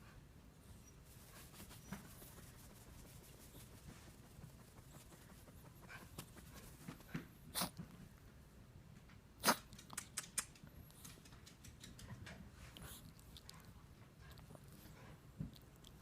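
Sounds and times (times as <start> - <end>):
pet sneezing: 7.5 - 7.9, 9.4 - 10.4.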